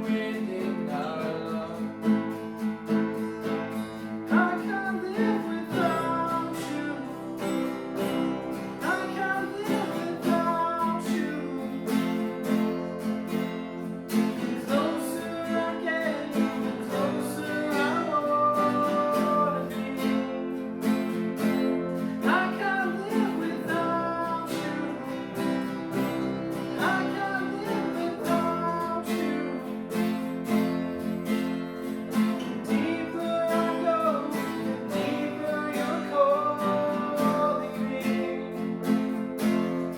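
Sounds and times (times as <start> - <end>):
strummed acoustic guitar: 0.0 - 39.9.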